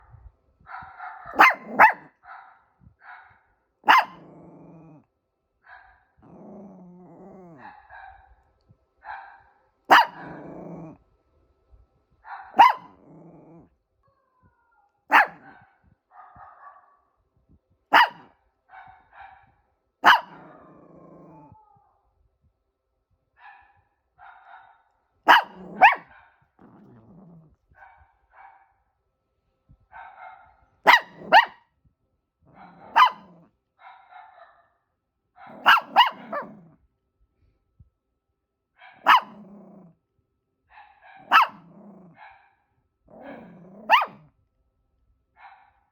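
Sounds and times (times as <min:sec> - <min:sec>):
dog barking: 0:00.7 - 0:04.4, 0:05.6 - 0:06.1, 0:07.5 - 0:08.4, 0:09.0 - 0:10.7, 0:12.2 - 0:13.1, 0:15.1 - 0:17.2, 0:17.9 - 0:21.5, 0:23.4 - 0:26.5, 0:27.8 - 0:28.8, 0:29.9 - 0:31.7, 0:32.5 - 0:36.7, 0:38.8 - 0:39.6, 0:40.7 - 0:44.3, 0:45.4 - 0:45.9
dog yipping: 0:00.8 - 0:02.1, 0:03.9 - 0:04.2, 0:09.9 - 0:10.4, 0:12.4 - 0:12.9, 0:14.6 - 0:15.6, 0:17.9 - 0:18.3, 0:20.0 - 0:20.4, 0:25.3 - 0:26.1, 0:30.9 - 0:31.6, 0:32.9 - 0:33.3, 0:35.5 - 0:36.5, 0:39.0 - 0:39.4, 0:41.2 - 0:41.6, 0:43.9 - 0:44.2
dog growling: 0:03.9 - 0:05.1, 0:06.2 - 0:07.8, 0:10.0 - 0:11.0, 0:12.6 - 0:13.8, 0:20.1 - 0:21.7, 0:25.3 - 0:27.8, 0:32.5 - 0:33.5, 0:35.5 - 0:36.8, 0:39.1 - 0:40.0, 0:41.2 - 0:42.2, 0:43.1 - 0:44.3.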